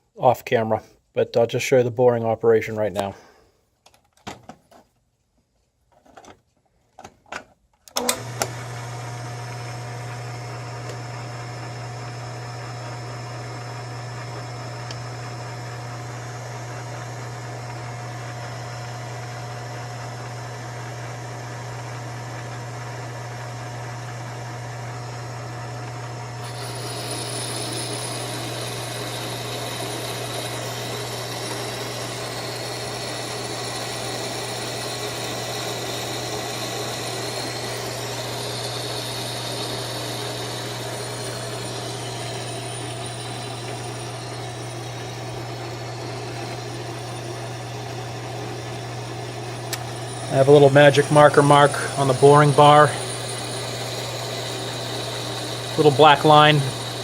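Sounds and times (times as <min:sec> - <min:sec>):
lathe humming: 0:08.0 - 0:57.0
boring bar cutting metal hiss: 0:26.4 - 0:48.7, 0:49.6 - 0:57.0.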